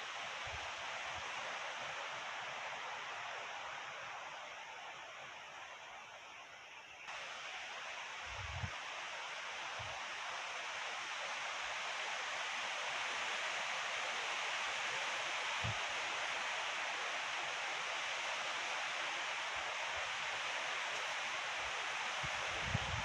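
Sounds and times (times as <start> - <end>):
wind blowing: 22.1 - 23.0
wind buffeting microphone: 22.2 - 23.0.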